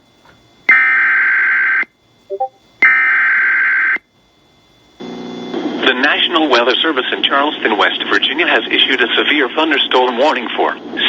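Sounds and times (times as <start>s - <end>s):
digital data tone bursts: 2.3s - 2.6s.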